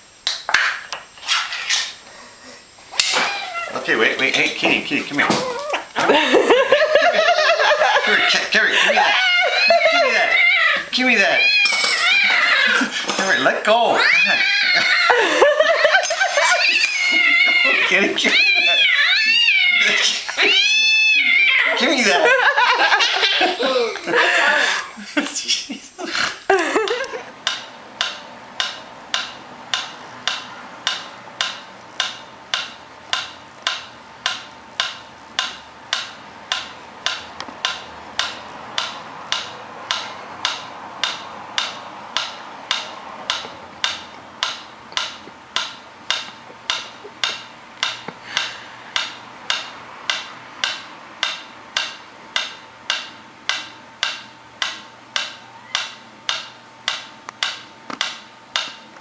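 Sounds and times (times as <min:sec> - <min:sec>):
sharp ticking clicks: 0:26.8 - 0:58.8.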